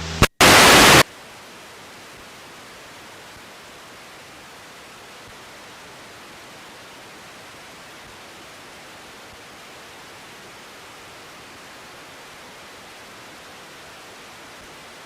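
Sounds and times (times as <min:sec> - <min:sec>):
radio receiver hiss: 0:00.0 - 0:01.1.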